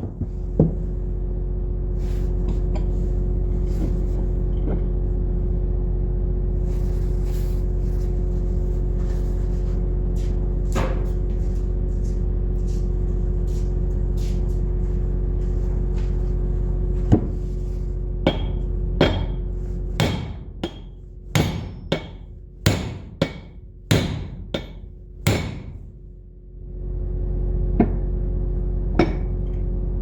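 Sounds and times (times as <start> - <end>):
steady low hum: 0.0 - 30.0
hammer striking metal: 18.3 - 19.4, 20.0 - 25.7.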